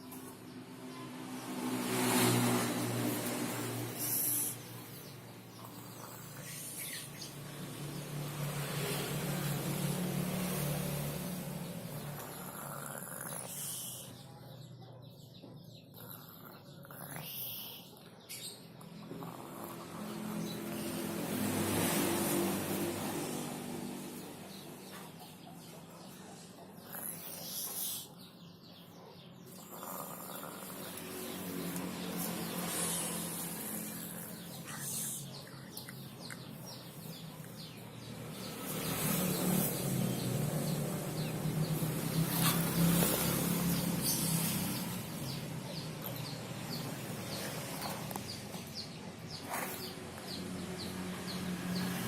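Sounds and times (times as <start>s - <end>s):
bird chirping: 3.0s - 9.6s, 24.1s - 52.0s
small child snoring: 11.9s - 14.2s, 15.9s - 18.0s, 19.0s - 20.4s, 26.8s - 28.2s, 29.5s - 31.5s.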